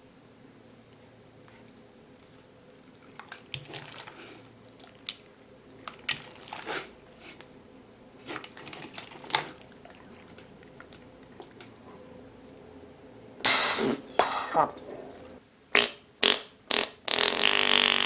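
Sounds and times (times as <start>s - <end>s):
slime squelching: 1.5s - 11.9s.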